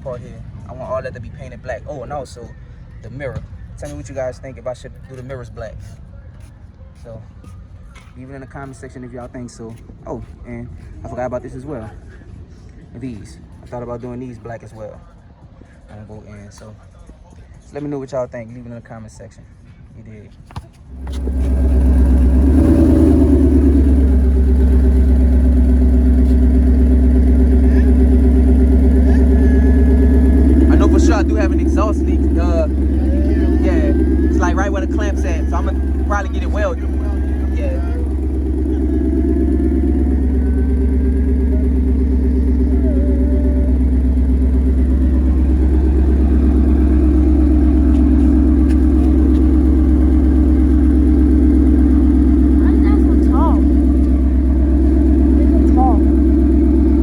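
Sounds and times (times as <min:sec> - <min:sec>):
car engine starting and idling: 0:20.8 - 0:57.0.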